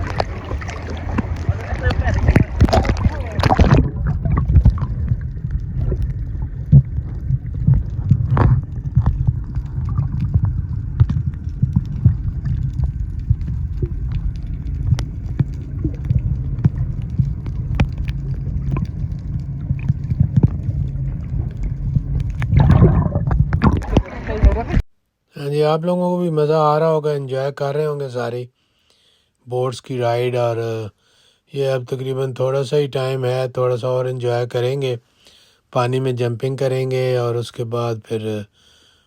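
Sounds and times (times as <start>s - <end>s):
steady low rumble: 0.0s - 24.8s.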